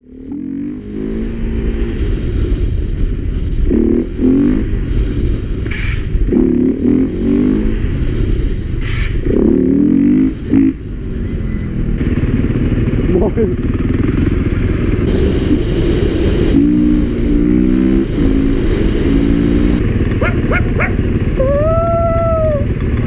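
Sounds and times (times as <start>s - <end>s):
motorcycle engine revving: 0.0s - 23.0s.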